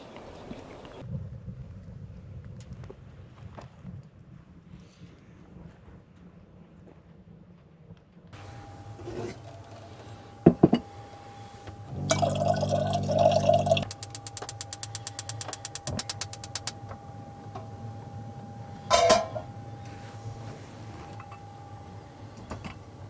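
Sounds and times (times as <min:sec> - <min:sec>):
running liquid: 0:08.4 - 0:17.1
small motor humming: 0:08.4 - 0:23.0
rapid even clicking: 0:13.8 - 0:16.8.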